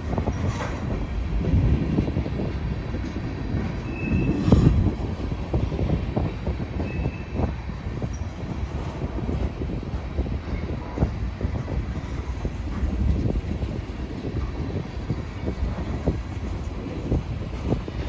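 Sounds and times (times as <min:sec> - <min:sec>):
train wheels clanking over rail joints: 0:00.0 - 0:18.0
high wheel squeals: 0:03.8 - 0:04.9, 0:06.8 - 0:08.5.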